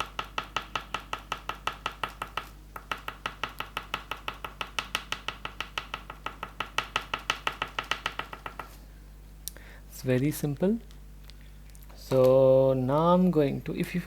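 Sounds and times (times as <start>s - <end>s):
pastel stick tapping on paper: 0.0s - 8.8s.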